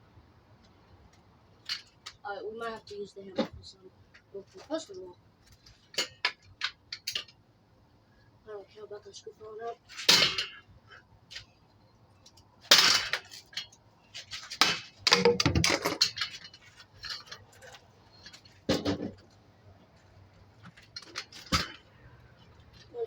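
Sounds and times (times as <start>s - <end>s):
metallic clanks and knocks: 14.5s - 17.5s, 18.7s - 19.3s.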